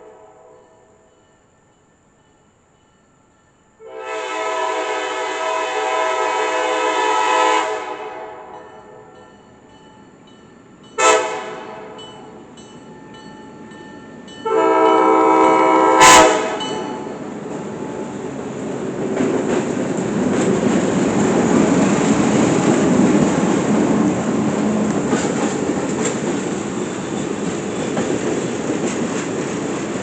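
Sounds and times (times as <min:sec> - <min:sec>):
locomotive air horn blasts: 0:00.0 - 0:00.8, 0:03.8 - 0:08.6, 0:11.0 - 0:12.0, 0:14.4 - 0:16.8
train rumble: 0:04.1 - 0:30.0.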